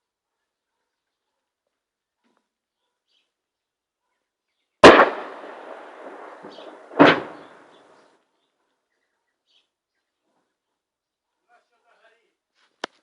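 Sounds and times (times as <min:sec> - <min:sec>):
artillery blasts: 0:04.8 - 0:08.1
rolling echo: 0:04.8 - 0:08.2.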